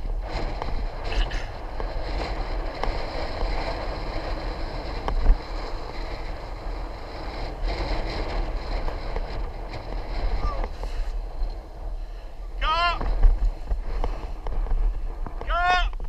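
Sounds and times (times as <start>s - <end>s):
tyres rumbling on road: 0.0s - 16.0s
wind buffeting microphone: 0.0s - 16.0s.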